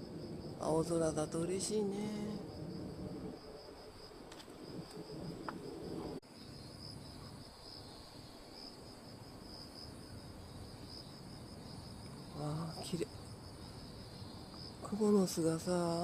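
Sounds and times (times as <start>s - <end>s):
faint low rumble: 0.0s - 6.2s
crickets chirring: 0.0s - 16.0s.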